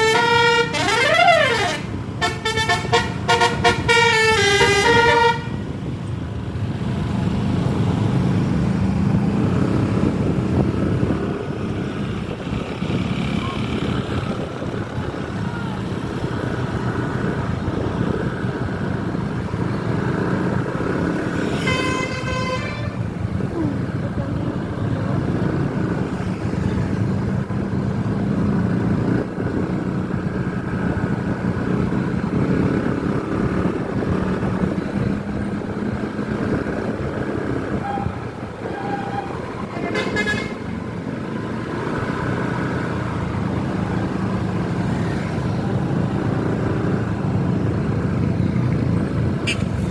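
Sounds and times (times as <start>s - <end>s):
bus horn blast: 0.0s - 5.7s, 21.4s - 23.1s, 37.8s - 40.8s, 49.4s - 49.9s
bus engines running: 0.0s - 49.9s.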